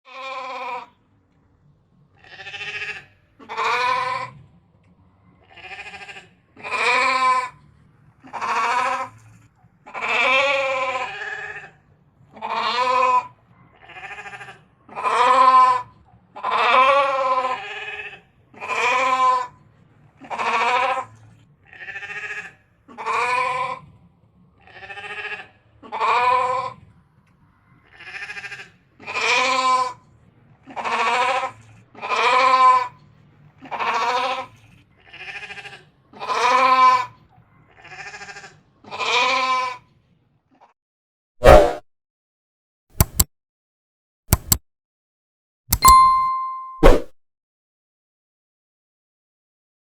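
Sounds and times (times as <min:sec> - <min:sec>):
ram bleating: 0:02.2 - 0:04.2, 0:05.4 - 0:07.5, 0:13.8 - 0:15.7, 0:21.7 - 0:23.3, 0:27.9 - 0:29.7, 0:35.1 - 0:37.0, 0:37.7 - 0:39.7.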